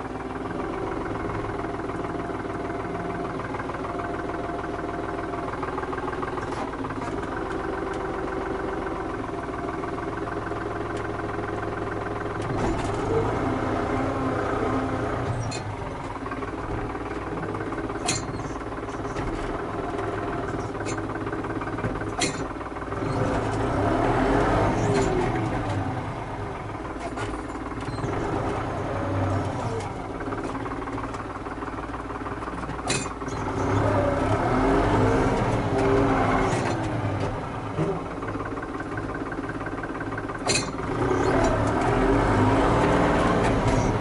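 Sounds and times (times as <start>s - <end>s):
tractor diesel engine running: 0.0s - 44.0s
sharp metallic clanks: 18.0s - 19.1s, 22.1s - 22.6s, 32.8s - 33.5s, 40.4s - 41.6s.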